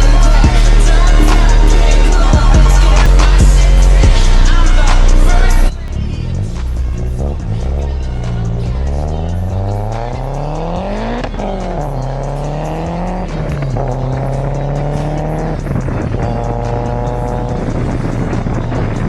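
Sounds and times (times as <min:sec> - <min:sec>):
car engine accelerating through gears: 0:05.8 - 0:19.0.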